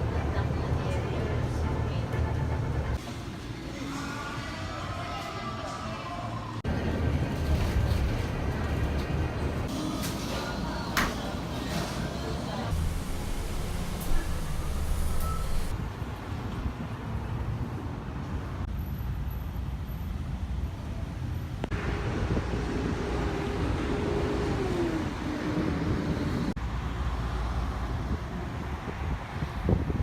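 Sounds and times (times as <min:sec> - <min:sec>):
road traffic rumble: 0:06.4 - 0:30.0.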